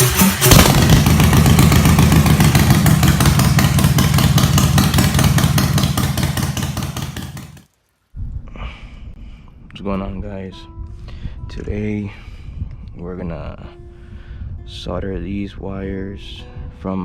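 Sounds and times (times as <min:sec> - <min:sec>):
motorcycle engine running: 0:00.0 - 0:07.6.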